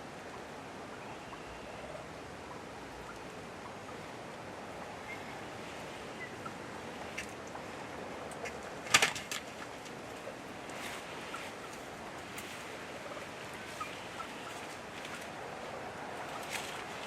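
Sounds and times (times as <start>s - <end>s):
faint bird chirps: 0.9s - 2.0s, 5.0s - 5.4s.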